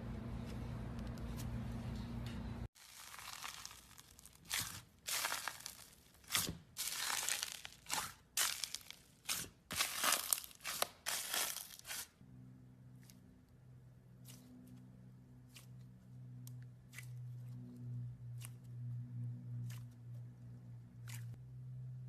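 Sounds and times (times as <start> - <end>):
slime crackling when squeezed: 2.8 - 12.0.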